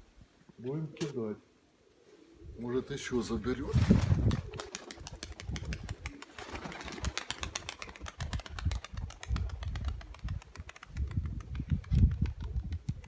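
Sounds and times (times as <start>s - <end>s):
pigeon wings clapping: 3.8s - 13.0s.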